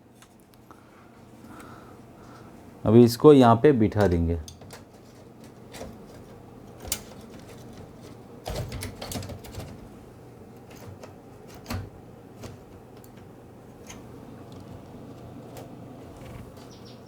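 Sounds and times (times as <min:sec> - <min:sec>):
printer parts clicking and knocking: 0:04.0 - 0:09.9.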